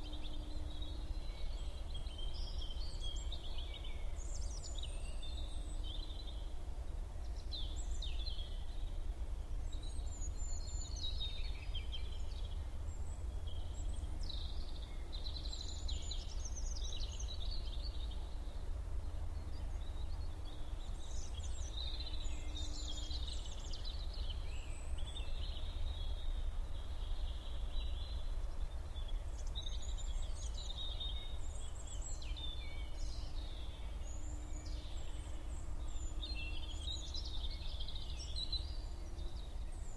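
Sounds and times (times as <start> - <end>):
low background rumble: 0.0 - 39.9
songbirds chirping and trilling: 0.0 - 39.9.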